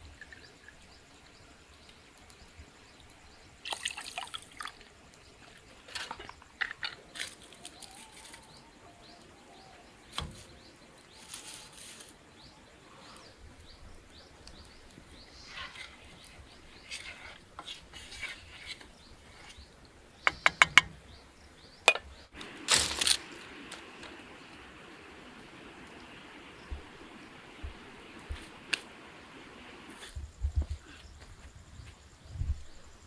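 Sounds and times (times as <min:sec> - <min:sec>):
birds chirping: 0:00.0 - 0:30.1
steady hiss: 0:00.0 - 0:33.0
rustling burst: 0:22.4 - 0:25.0.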